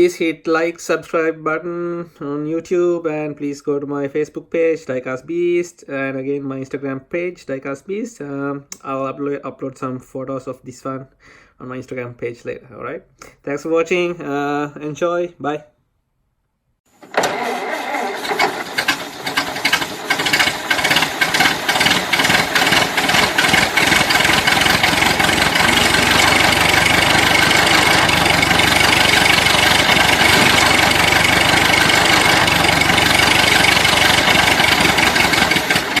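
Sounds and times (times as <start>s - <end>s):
engine starting and running: 16.9s - 36.0s.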